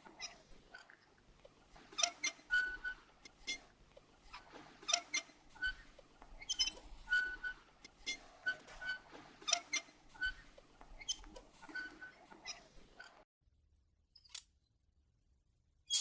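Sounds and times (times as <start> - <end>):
metal lantern joints squeaking: 0.0 - 0.9, 1.9 - 3.6, 4.2 - 13.2.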